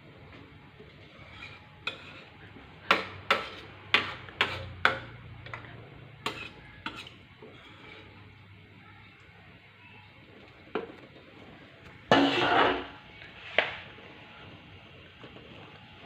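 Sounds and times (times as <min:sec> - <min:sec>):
utensil clacking against cooking pot: 0:01.5 - 0:07.8.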